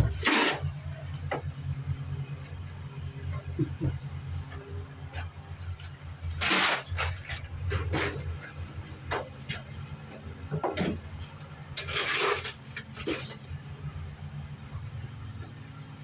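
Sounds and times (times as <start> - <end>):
steady low hum: 0.0 - 11.8.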